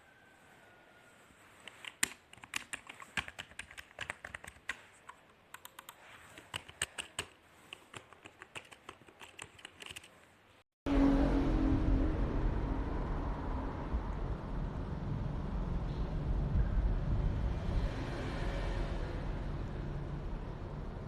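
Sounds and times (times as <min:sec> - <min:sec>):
keyboard typing clicks: 0:01.7 - 0:10.1.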